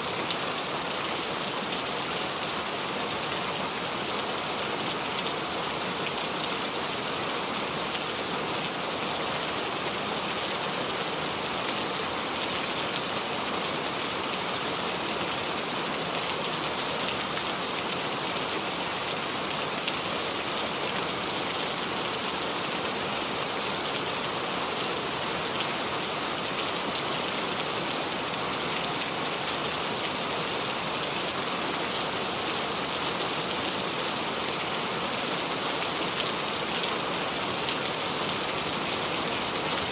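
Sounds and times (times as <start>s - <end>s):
rain falling on a roof: 0.0s - 39.9s.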